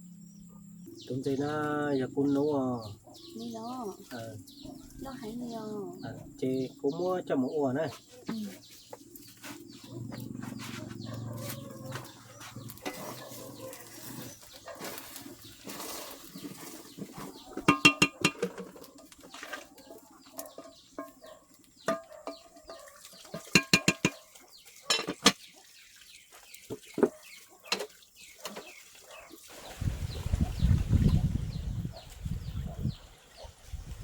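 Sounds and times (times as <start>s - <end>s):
chickens clucking: 7.8s - 29.4s.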